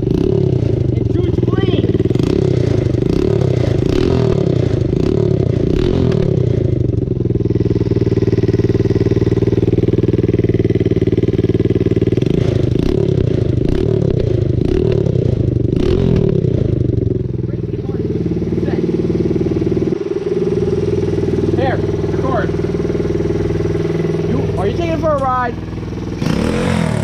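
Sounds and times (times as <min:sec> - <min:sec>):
small engine revving: 0:00.0 - 0:06.8, 0:12.0 - 0:16.8, 0:17.8 - 0:27.0.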